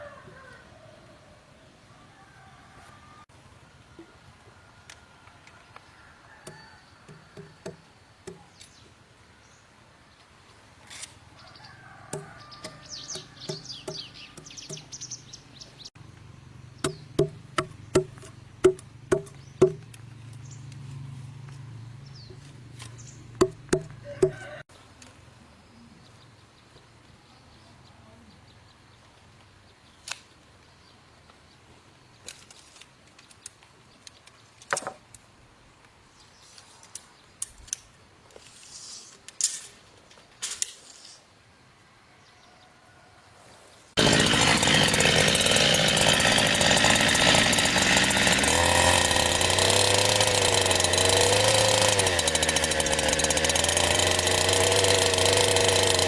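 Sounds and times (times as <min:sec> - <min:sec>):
birds chirping: 0:11.4 - 0:16.0, 0:16.7 - 0:18.0
hand tool knocking on wood: 0:12.2 - 0:14.9, 0:16.8 - 0:19.9, 0:23.4 - 0:24.4.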